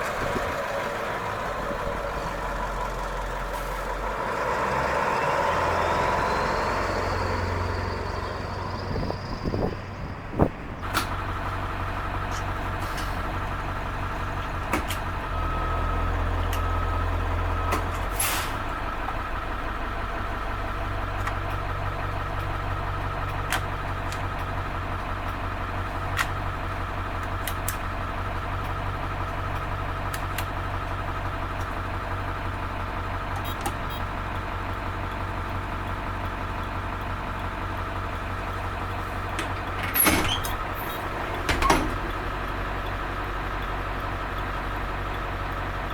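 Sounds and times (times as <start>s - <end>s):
diesel engine idling: 0.0s - 45.9s
sharp clicks: 27.2s - 27.9s.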